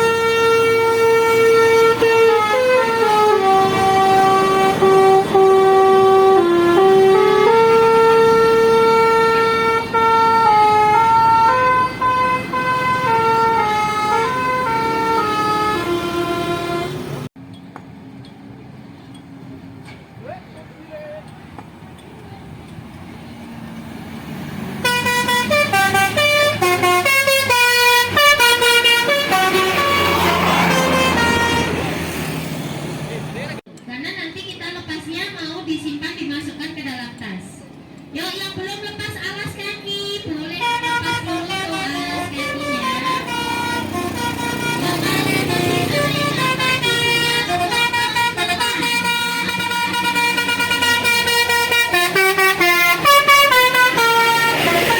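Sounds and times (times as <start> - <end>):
musical air horn tune: 0.0 - 17.3, 24.8 - 31.9, 40.5 - 54.9
bus engine rumble: 0.0 - 54.9.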